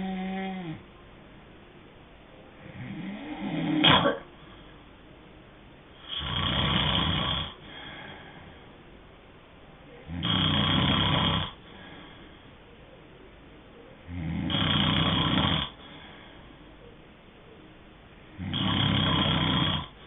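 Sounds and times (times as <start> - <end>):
person snoring: 0.0 - 0.8, 2.6 - 4.0, 6.0 - 8.4, 10.0 - 12.0, 14.1 - 15.8, 18.4 - 20.0
soft breath: 4.3 - 5.0, 7.6 - 9.0, 11.6 - 13.0, 15.8 - 17.0.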